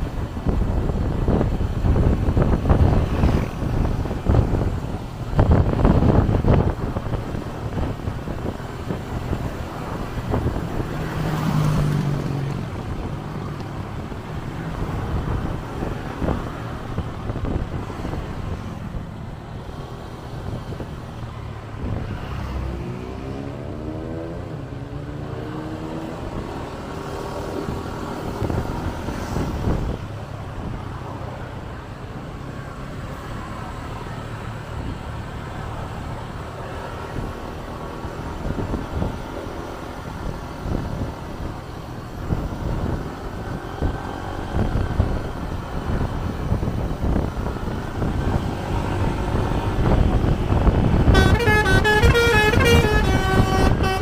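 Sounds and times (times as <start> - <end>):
road traffic noise: 0.0 - 54.0
vehicle engine speeding up: 21.8 - 29.8, 42.2 - 54.0.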